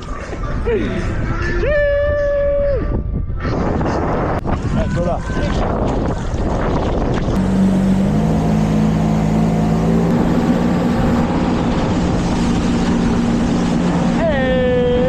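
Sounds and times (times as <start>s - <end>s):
jet ski engine running: 6.1s - 15.0s
water rushing: 7.3s - 15.0s.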